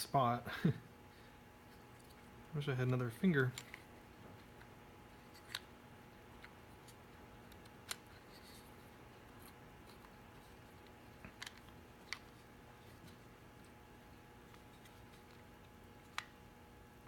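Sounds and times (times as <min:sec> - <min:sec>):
small plastic clicks: 0:05.3 - 0:05.7, 0:10.8 - 0:12.4, 0:16.0 - 0:16.4.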